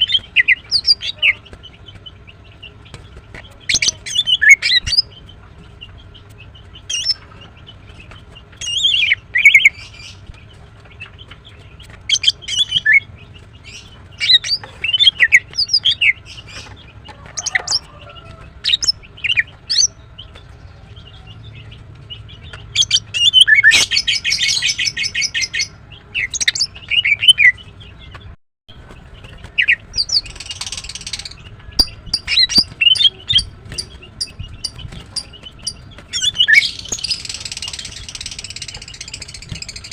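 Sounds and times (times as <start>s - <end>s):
bird chirping and whistling: 0.0s - 1.5s, 3.7s - 5.1s, 6.9s - 7.2s, 8.6s - 10.2s, 12.1s - 13.1s, 13.7s - 16.8s, 18.6s - 20.0s, 22.7s - 27.6s, 29.6s - 39.9s
bird rattling trill: 29.6s - 39.9s.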